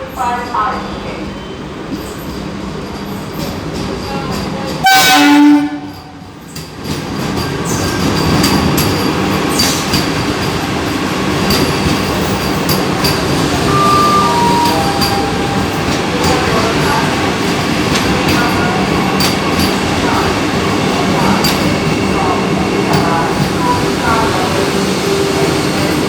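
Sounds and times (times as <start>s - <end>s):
train horn blast: 4.8s - 6.0s.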